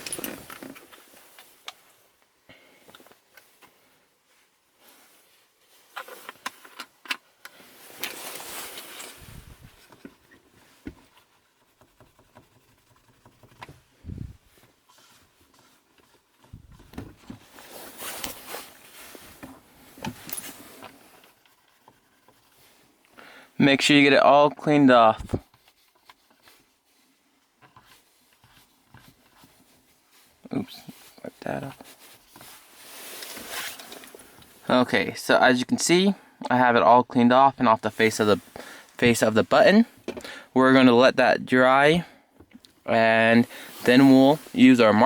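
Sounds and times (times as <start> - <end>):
cotton rustling: 13.8 - 21.1, 29.4 - 34.8
dull low thumps: 14.0 - 14.5, 16.6 - 17.0.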